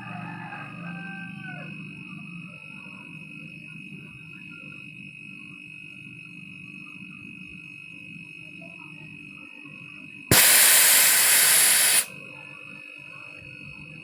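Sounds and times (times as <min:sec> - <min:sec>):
compressed gas hissing from tubing: 0:10.3 - 0:12.1.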